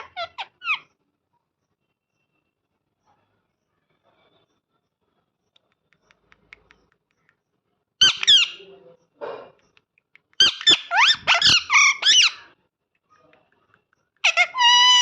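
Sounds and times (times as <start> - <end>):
parrot squawking: 0.0 - 0.9, 8.0 - 8.7, 10.4 - 12.5, 14.2 - 15.0.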